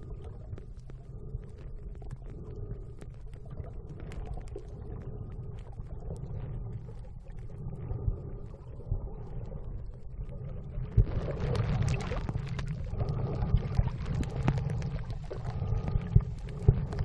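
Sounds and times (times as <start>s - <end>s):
faint underwater clicks: 0.0s - 17.0s
underwater rumble: 0.0s - 17.0s.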